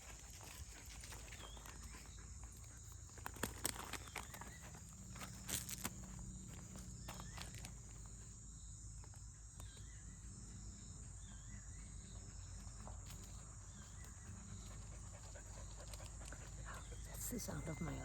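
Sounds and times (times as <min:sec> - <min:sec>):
insects buzzing: 0:00.0 - 0:18.0.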